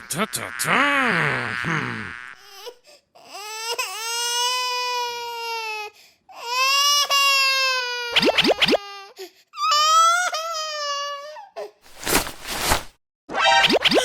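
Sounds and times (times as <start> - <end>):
child crying and sobbing: 2.6 - 8.1, 8.8 - 11.8.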